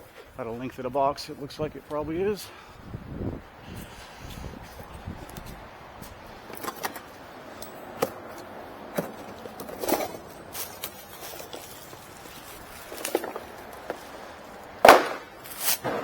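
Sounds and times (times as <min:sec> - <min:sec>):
clicks and knocks of unpacking: 0:09.0 - 0:14.1.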